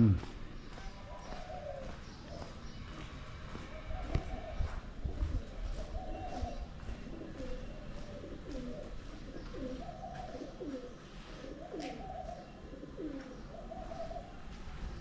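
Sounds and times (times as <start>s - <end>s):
pigeon cooing: 3.9s - 14.5s.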